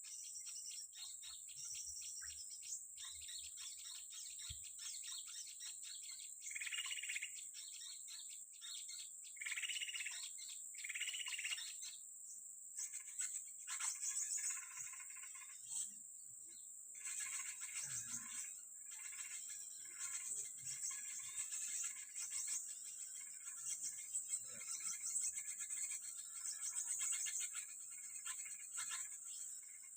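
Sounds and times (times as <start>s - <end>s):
small birds chirping: 0.0s - 29.9s
high insect drone: 12.8s - 29.9s.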